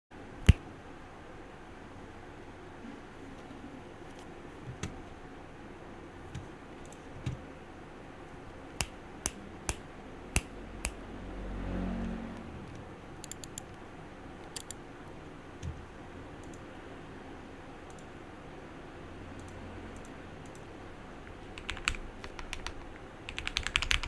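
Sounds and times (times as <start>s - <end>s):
mechanical keyboard keystrokes: 13.2s - 13.7s, 14.5s - 14.8s, 21.6s - 24.0s.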